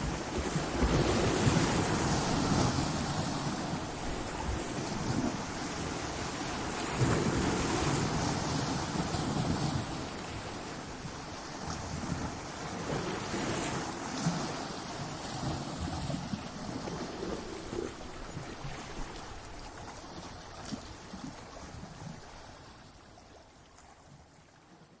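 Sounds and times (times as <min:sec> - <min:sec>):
ocean waves breaking: 0:00.0 - 0:23.4.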